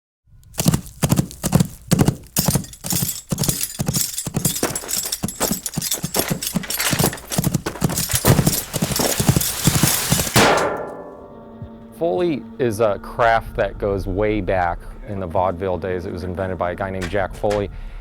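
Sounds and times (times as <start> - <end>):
horse hooves galloping: 0.6 - 10.6.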